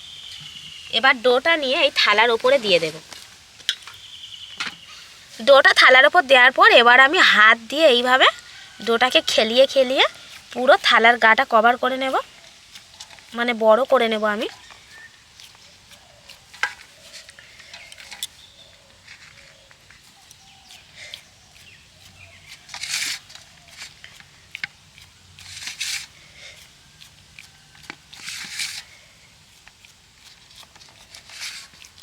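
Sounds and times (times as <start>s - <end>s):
hands scraping pizza dough: 19.1s - 29.1s, 29.7s - 32.0s.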